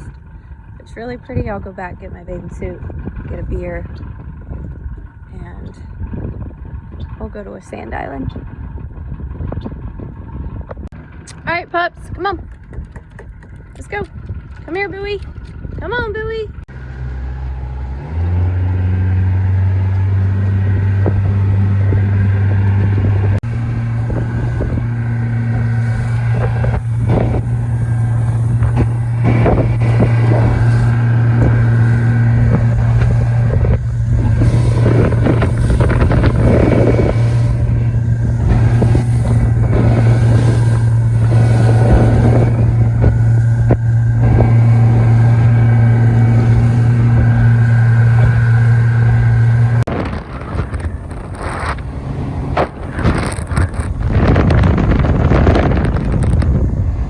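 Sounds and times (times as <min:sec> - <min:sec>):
motorboat engine: 0:00.0 - 0:57.0
wind buffeting microphone: 0:00.0 - 0:57.0.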